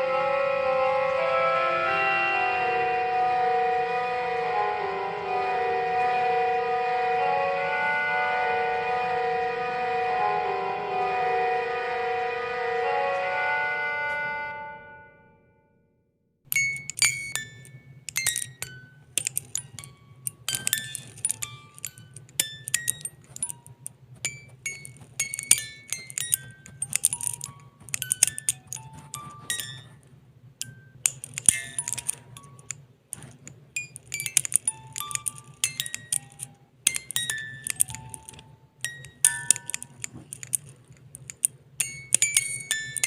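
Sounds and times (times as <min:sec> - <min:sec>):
tinkling chime-like notes: 0:00.0 - 0:06.6, 0:16.5 - 0:30.0, 0:30.6 - 0:43.0.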